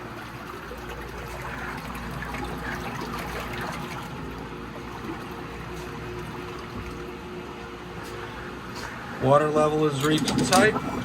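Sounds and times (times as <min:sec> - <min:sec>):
water trickling into tank: 0:00.0 - 0:08.6
faint machine hum: 0:00.0 - 0:11.0.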